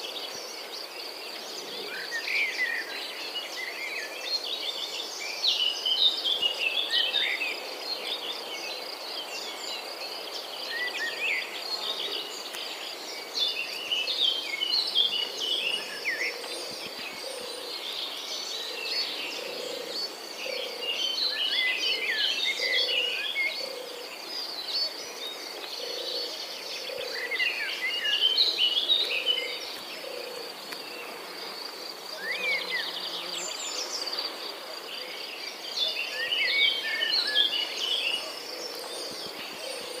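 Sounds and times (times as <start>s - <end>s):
birds chirping: 8.2s - 40.0s.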